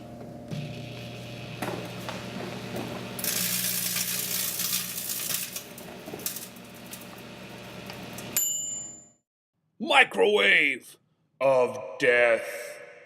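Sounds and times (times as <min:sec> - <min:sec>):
microwave oven humming: 0:00.0 - 0:09.0
food crackling and sizzling: 0:00.6 - 0:08.4.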